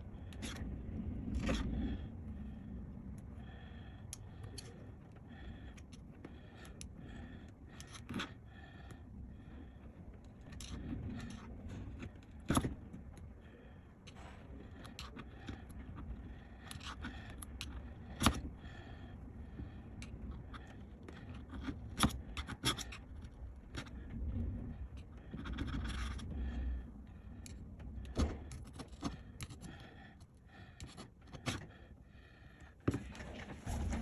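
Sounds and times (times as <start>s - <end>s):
tools clicking and tapping on case: 20.0s - 24.0s, 27.4s - 31.7s.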